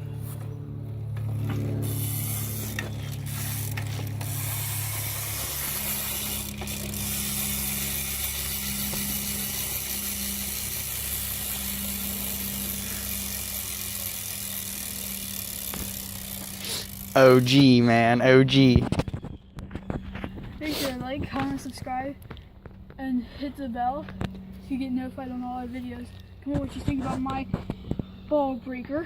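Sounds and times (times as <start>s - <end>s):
bike freewheel hub clicking: 1.0s - 18.2s.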